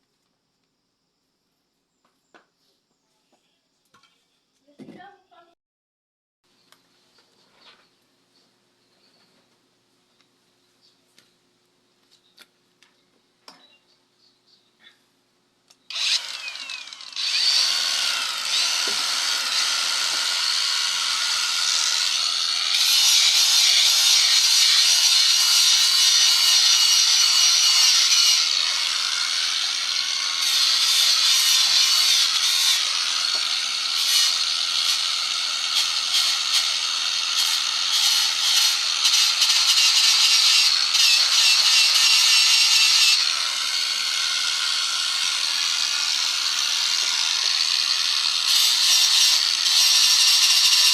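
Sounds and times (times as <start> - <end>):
hissing wood cutting noise: 15.7 - 50.9
power tool motor hum: 15.8 - 50.9.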